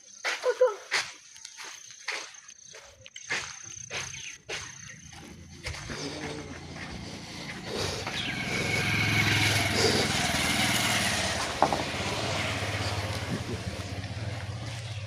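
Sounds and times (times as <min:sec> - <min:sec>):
small engine running: 0:05.0 - 0:15.0.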